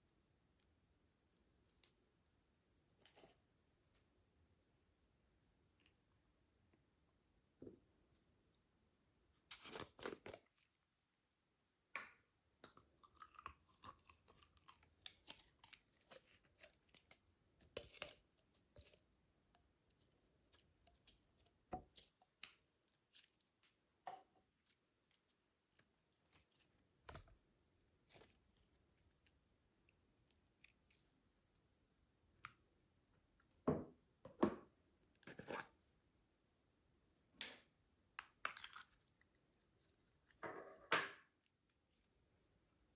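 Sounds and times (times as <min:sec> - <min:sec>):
slime squishing in plastic bags: 0:09.4 - 0:11.1, 0:12.2 - 0:32.4.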